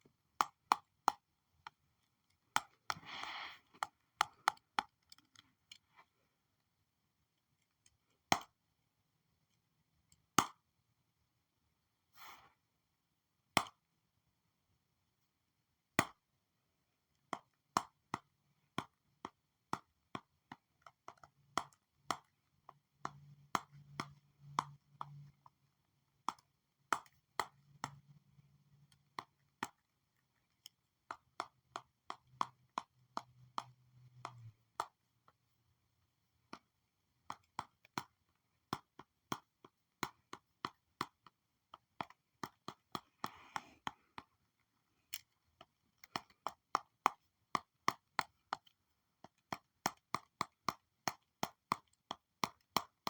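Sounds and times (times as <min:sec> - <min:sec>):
stylus tapping on tablet: 0:00.3 - 0:01.8, 0:17.3 - 0:25.6, 0:26.2 - 0:28.2, 0:28.8 - 0:30.0, 0:30.6 - 0:35.0, 0:36.5 - 0:44.4, 0:45.6 - 0:53.0.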